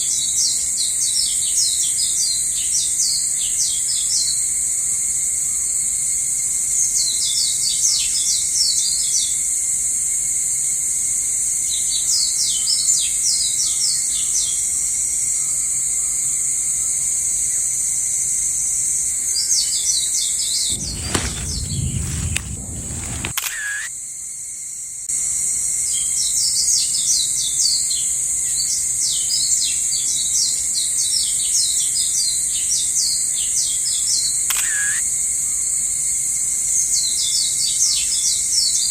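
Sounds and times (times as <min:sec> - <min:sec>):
low rumble: 0:20.7 - 0:23.4.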